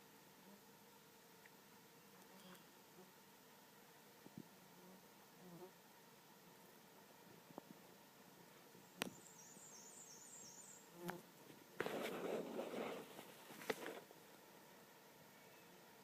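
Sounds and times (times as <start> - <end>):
insects buzzing: 0.0 - 16.0
brief rustle: 11.8 - 14.1.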